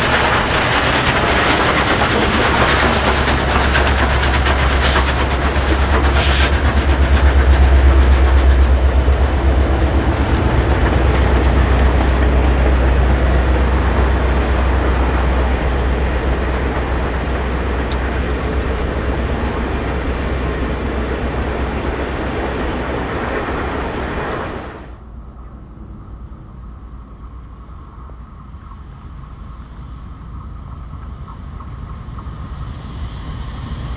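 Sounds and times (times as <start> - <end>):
wheels clicking over rail joints: 0.0 - 26.4
train rumbling past: 0.0 - 33.9.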